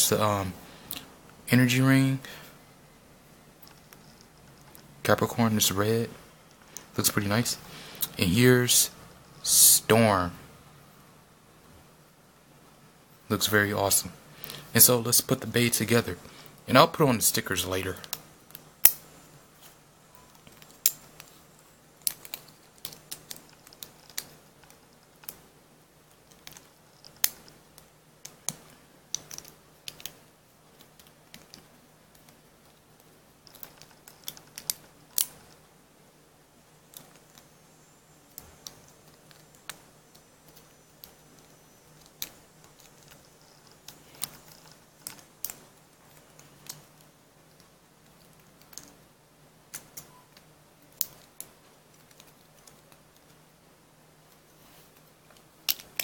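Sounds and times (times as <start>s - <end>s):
small plastic clicks and taps: 26.2s - 30.2s.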